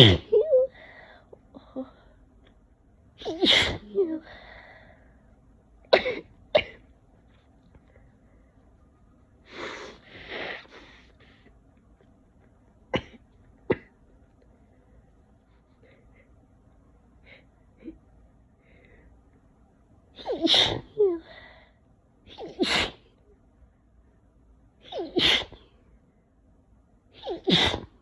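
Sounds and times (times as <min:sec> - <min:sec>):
person sneezing: 0:00.0 - 0:00.4, 0:03.2 - 0:04.0, 0:20.2 - 0:21.0, 0:22.3 - 0:23.1, 0:24.9 - 0:25.6, 0:27.2 - 0:28.0
noisy breathing: 0:04.2 - 0:05.4, 0:09.4 - 0:11.6.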